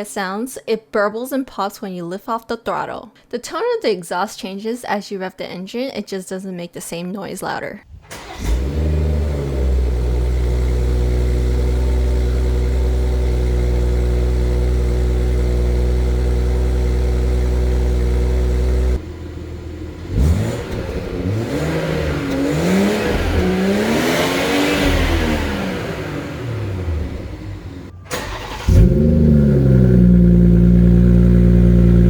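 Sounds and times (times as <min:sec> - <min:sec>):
car engine idling: 0:08.0 - 0:32.0
car engine revving: 0:08.0 - 0:32.0.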